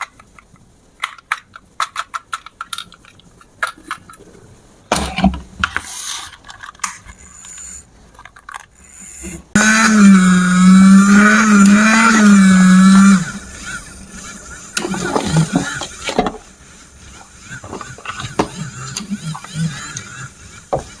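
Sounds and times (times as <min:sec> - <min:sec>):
loud wavering electronic buzz: 0:09.0 - 0:21.0.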